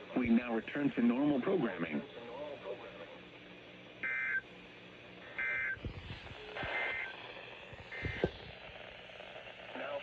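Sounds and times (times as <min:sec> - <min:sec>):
two-tone electronic data chirps: 0:04.0 - 0:04.4, 0:05.4 - 0:05.8, 0:06.6 - 0:07.1.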